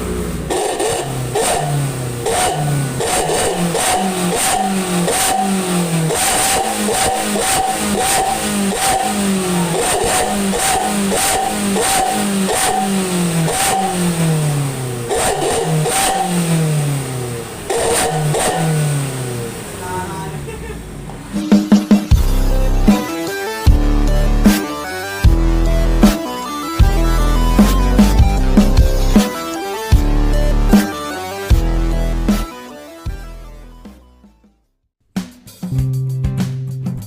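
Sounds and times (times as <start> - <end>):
sharp exhaust cracks: 0.0 - 19.8
van engine revving: 0.0 - 32.6.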